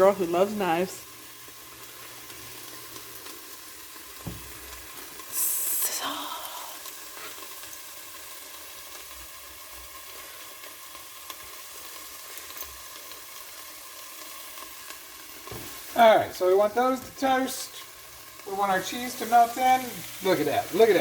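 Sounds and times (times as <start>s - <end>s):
food sizzling in a skillet: 0.0s - 21.0s
soft knock: 4.2s - 4.5s
flare of hiss: 5.3s - 7.3s.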